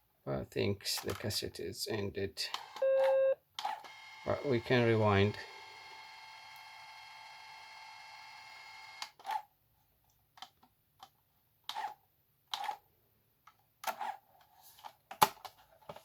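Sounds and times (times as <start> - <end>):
tape machine motor whining: 3.9 - 9.1.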